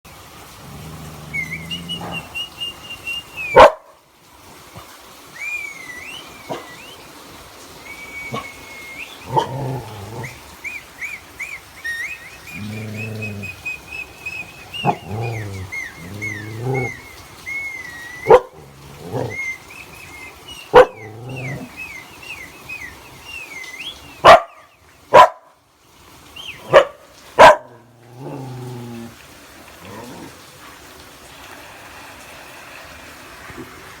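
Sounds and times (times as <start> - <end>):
dog low drawn-out vocalizing: 0.5 - 2.8, 8.2 - 10.5, 12.3 - 19.6, 20.6 - 21.9, 26.6 - 30.7
dog barking: 1.9 - 2.3, 3.5 - 4.0, 6.5 - 6.8, 9.3 - 9.6, 14.8 - 15.4, 18.3 - 19.4, 20.7 - 21.6, 24.2 - 25.6, 26.6 - 27.8.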